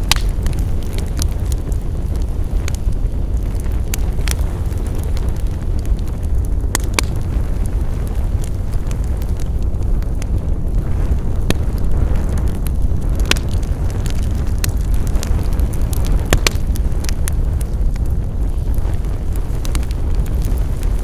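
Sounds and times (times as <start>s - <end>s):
wood fire crackling and popping: 0.0s - 21.0s.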